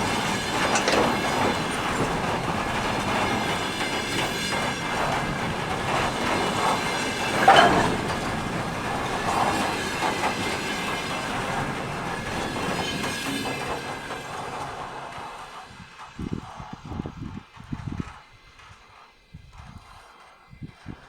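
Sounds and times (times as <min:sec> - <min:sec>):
train wheels clattering over joints: 0:00.0 - 0:17.0
loud metal clang: 0:07.3 - 0:08.5.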